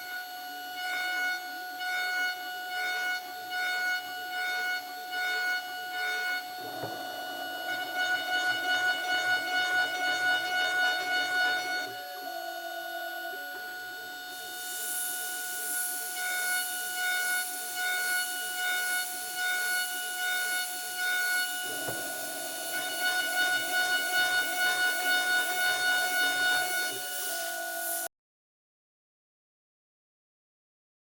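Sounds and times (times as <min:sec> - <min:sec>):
spindle whining: 0:05.2 - 0:28.1
hissing metal cutting noise: 0:06.2 - 0:28.1.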